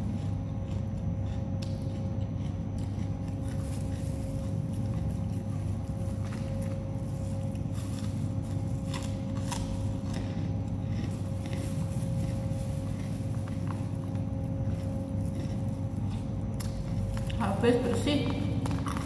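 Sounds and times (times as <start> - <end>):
faint hum tone: 0.0 - 19.0
low background rumble: 0.0 - 19.0.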